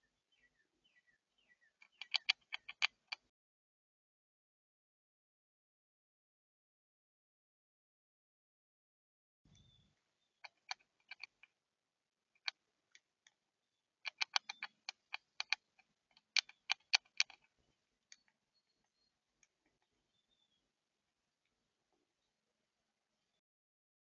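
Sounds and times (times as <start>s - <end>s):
birds pecking at a feeder: 0.5s - 3.3s, 9.5s - 11.6s, 12.4s - 20.6s.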